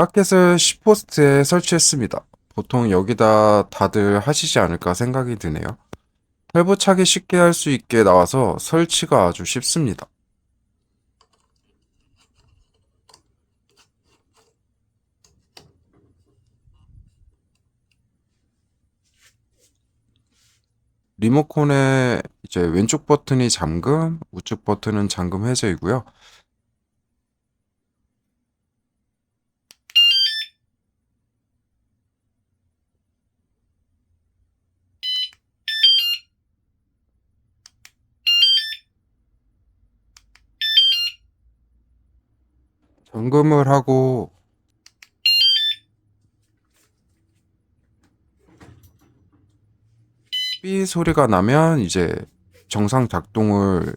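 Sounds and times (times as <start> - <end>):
bicycle alarm electronic chirps: 29.9 - 30.6, 35.0 - 36.2, 38.3 - 38.9, 40.6 - 41.2, 45.2 - 45.9, 50.3 - 50.7.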